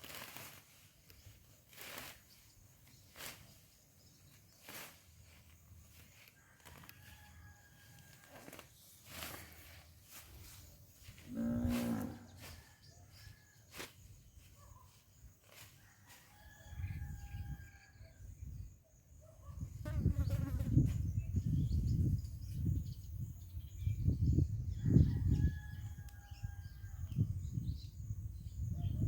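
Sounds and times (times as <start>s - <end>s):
cow mooing: 11.3s - 12.4s.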